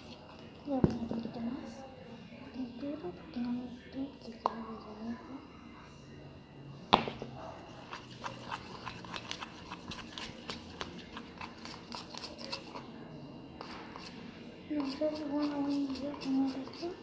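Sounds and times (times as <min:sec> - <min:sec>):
spoon stirring sticky slime: 0:07.6 - 0:17.0.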